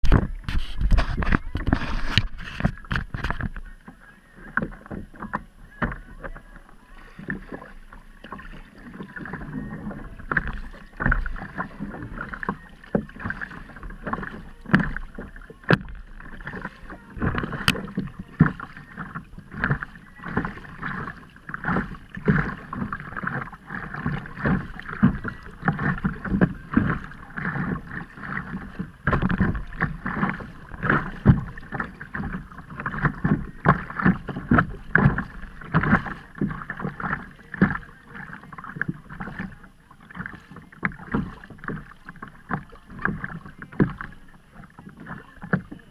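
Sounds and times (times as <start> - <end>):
water splashing against kayak: 0.0 - 45.9.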